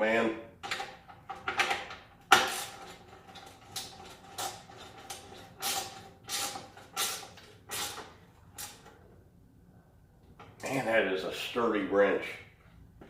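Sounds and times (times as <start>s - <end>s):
ratcheting wrench strokes: 2.4s - 8.9s.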